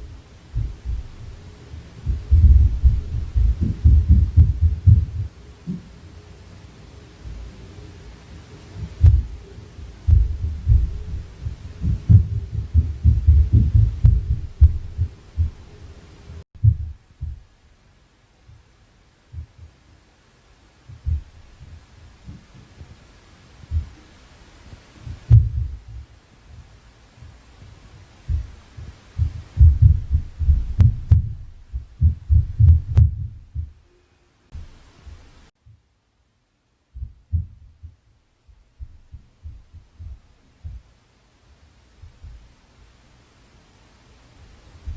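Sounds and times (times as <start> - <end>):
footsteps and stomping upstairs: 0.0 - 5.9, 8.8 - 15.7, 16.6 - 17.5, 20.8 - 23.0, 23.6 - 24.1, 25.0 - 26.7, 27.6 - 33.8, 36.9 - 40.9
heavy thuds through ceiling: 0.0 - 6.1, 8.7 - 17.7, 18.4 - 19.8, 20.8 - 33.8, 36.9 - 40.9
sharp knocks: 8.8 - 9.4.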